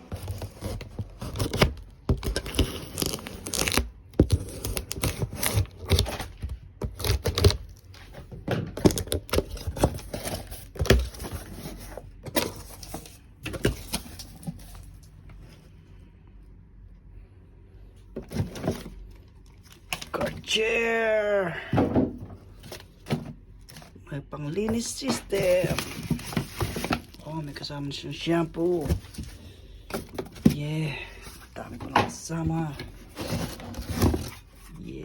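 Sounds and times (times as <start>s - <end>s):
cardboard and plastic tearing: 0.0s - 15.0s, 24.6s - 27.6s, 28.4s - 30.6s, 31.2s - 34.8s.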